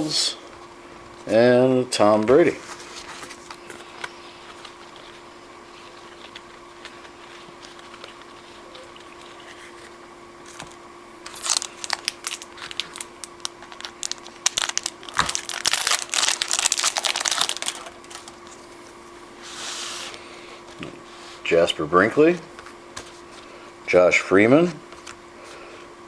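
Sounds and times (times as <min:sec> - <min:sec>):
faint steady hum: 0:00.0 - 0:26.0
foil wrapper torn and crumpled: 0:10.4 - 0:18.6.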